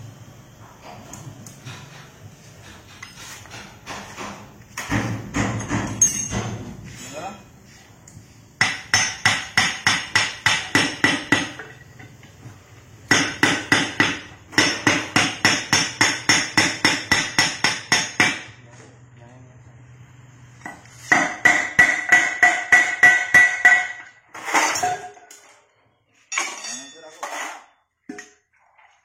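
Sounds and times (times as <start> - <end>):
hammer striking metal: 2.6 - 6.6, 8.6 - 11.7, 13.1 - 18.6, 21.1 - 25.2.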